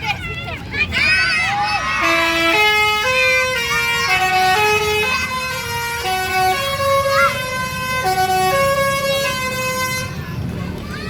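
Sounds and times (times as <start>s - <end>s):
bus horn playing a melody: 2.0s - 10.5s.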